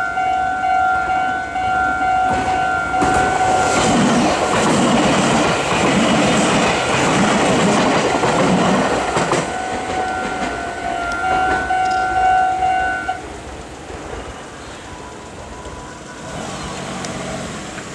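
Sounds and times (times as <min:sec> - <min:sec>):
level crossing warning bell: 0:00.0 - 0:03.9, 0:09.1 - 0:13.1
train rumble and wheel clatter: 0:00.0 - 0:17.9.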